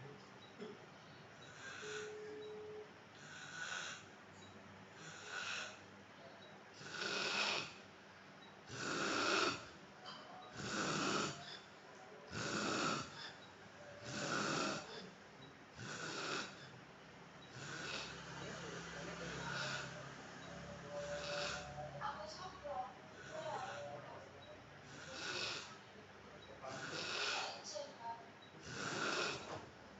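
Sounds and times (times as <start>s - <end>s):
quiet breathing: 0.0s - 27.9s, 28.5s - 29.7s
man snoring: 3.2s - 4.1s, 5.0s - 5.8s, 6.8s - 7.8s, 8.7s - 9.7s, 10.5s - 11.6s, 12.3s - 13.4s, 14.0s - 15.1s, 15.8s - 16.7s, 17.5s - 21.8s, 23.2s - 23.9s, 24.8s - 25.8s, 26.7s - 27.5s, 28.6s - 29.6s.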